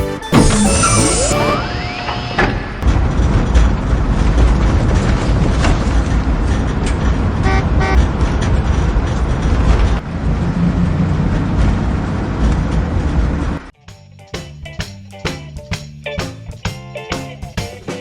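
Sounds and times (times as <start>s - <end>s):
horn toots: 0.0s - 2.0s
heavy vehicle engine rumbling: 0.0s - 13.7s.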